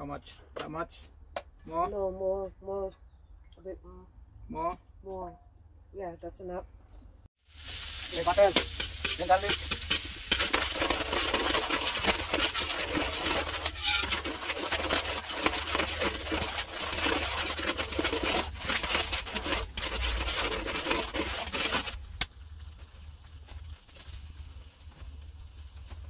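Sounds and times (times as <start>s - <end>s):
food sizzling in hot oil: 7.4s - 26.0s
small crackles: 7.5s - 26.0s.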